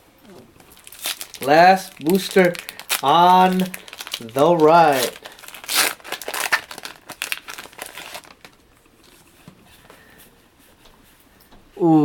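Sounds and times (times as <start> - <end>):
foil wrapper crinkling: 0.6 - 8.7.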